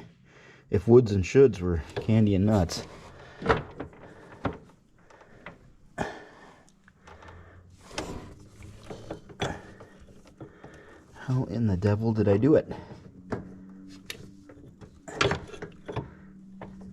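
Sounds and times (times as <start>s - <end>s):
metal parts clicking and knocking: 12.8s - 16.9s.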